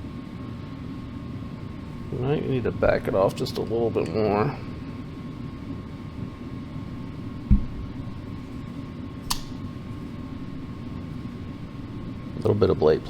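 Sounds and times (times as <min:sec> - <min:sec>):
low fan-like hum: 0:00.0 - 0:13.0
dull thump: 0:07.5 - 0:07.9
sharp metallic click: 0:09.2 - 0:09.6.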